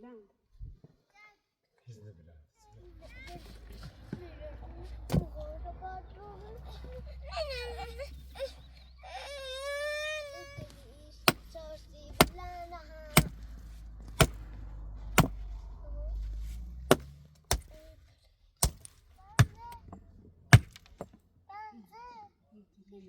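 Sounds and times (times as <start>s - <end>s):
tool striking wood: 11.2s - 15.5s, 16.9s - 17.8s, 18.6s - 21.2s.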